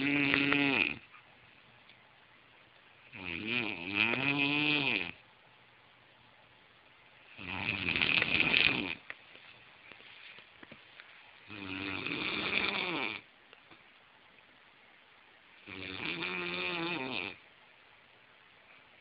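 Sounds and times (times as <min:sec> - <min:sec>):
person snoring loudly: 0:00.0 - 0:01.0, 0:03.1 - 0:05.2, 0:07.4 - 0:09.0, 0:11.5 - 0:13.2, 0:15.7 - 0:17.4.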